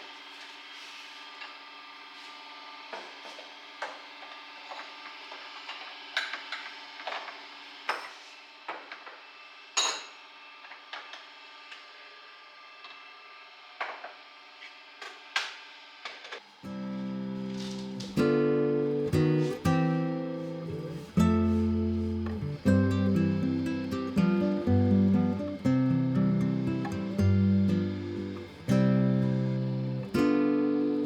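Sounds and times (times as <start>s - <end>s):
steady hum: 16.7s - 31.0s.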